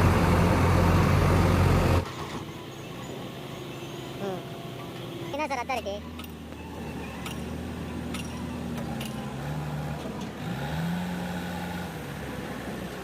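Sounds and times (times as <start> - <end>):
diesel engine running: 0.0 - 13.0.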